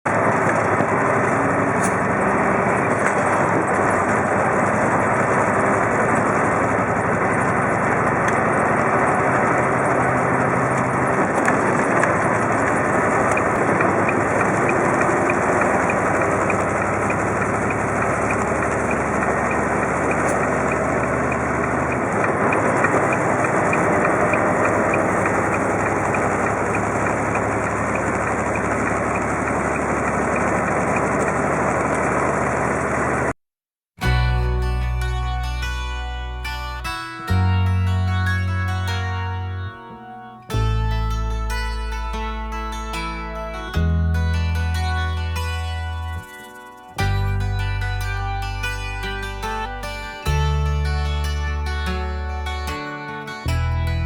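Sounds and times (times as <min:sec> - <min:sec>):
heavy truck engine running: 0:00.0 - 0:33.4, 0:34.0 - 0:54.0.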